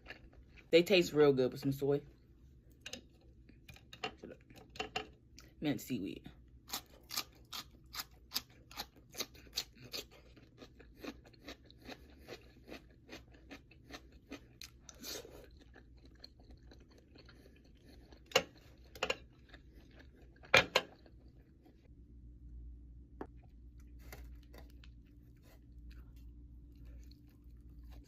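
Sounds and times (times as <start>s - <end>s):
person chewing crunchy food: 0.0s - 0.7s, 6.6s - 21.9s, 23.2s - 28.0s.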